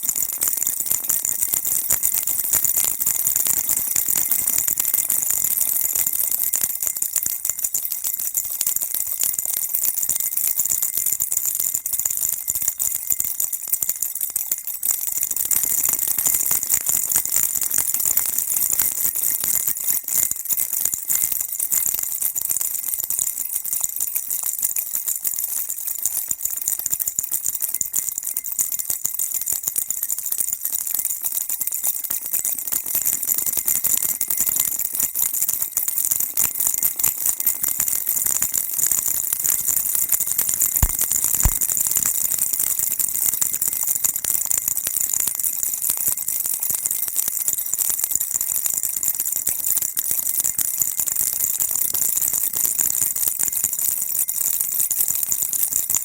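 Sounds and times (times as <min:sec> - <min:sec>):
baby rattle shaking: 0:37.2 - 0:44.8.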